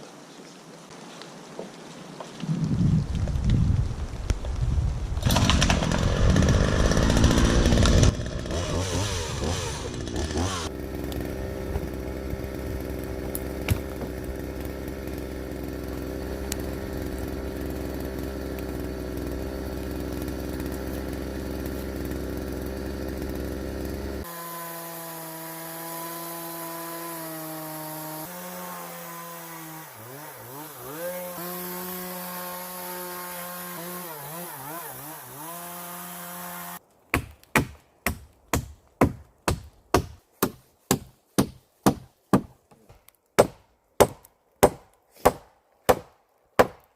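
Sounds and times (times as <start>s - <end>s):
chainsaw cutting wood: 5.2s - 46.9s.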